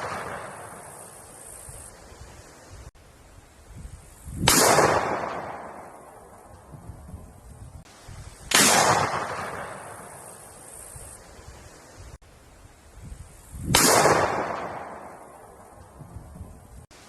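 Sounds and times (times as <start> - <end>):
gunshots with echo: 4.4 - 5.9, 8.5 - 10.1, 13.7 - 15.3.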